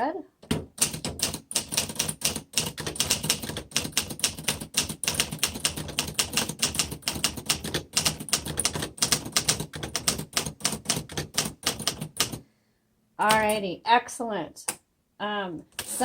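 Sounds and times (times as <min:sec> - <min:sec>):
manual typewriter typing: 0:00.4 - 0:12.4.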